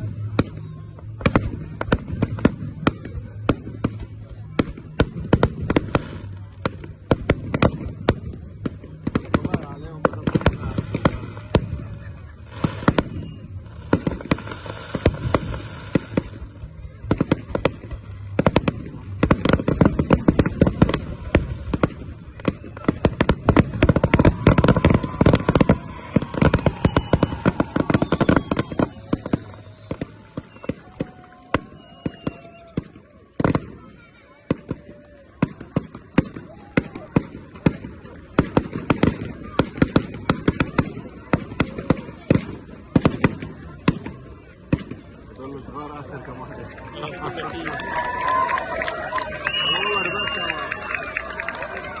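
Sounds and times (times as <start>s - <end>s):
fireworks crackling and banging: 0.0s - 52.0s
firework whistling: 4.7s - 35.6s, 47.8s - 52.0s.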